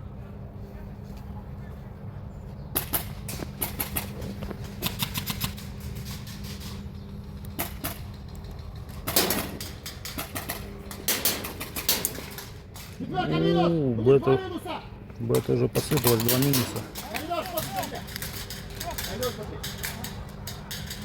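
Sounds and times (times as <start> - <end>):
steady low hum: 0.0 - 21.0
airsoft guns firing bursts: 2.8 - 5.8.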